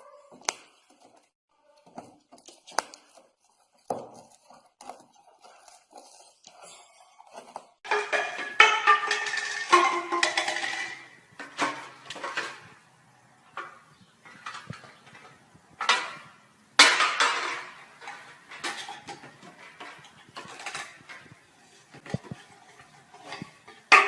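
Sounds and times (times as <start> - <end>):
small hard objects clattering: 7.8 - 24.0.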